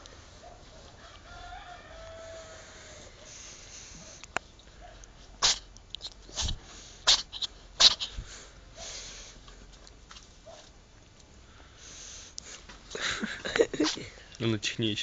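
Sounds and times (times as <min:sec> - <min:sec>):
cat sneezing: 0:05.4 - 0:05.7, 0:06.3 - 0:08.2, 0:13.7 - 0:14.1.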